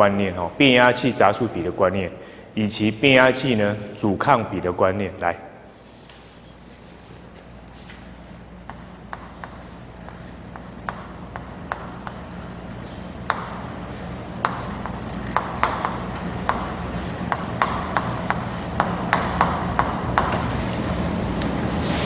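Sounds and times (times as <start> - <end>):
low electrical hum: 0.0 - 22.0
writing taps on a board: 8.7 - 12.2, 13.3 - 13.7, 14.4 - 20.4.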